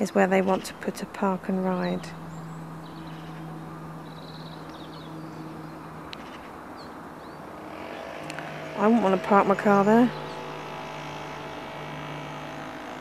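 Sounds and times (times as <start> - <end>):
constant low hum: 0.0 - 13.0
faint high bird calls: 1.8 - 8.4.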